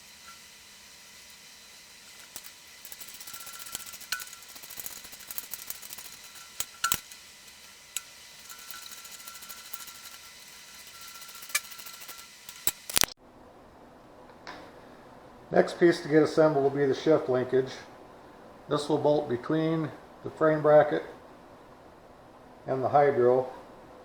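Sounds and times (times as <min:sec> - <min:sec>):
ratchet wrench clicking: 0:00.0 - 0:13.1.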